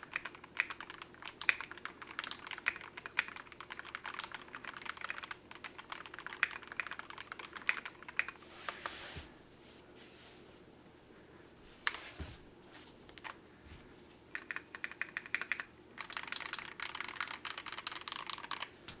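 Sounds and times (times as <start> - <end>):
mechanical keyboard typing: 0.0 - 8.4, 14.3 - 18.7.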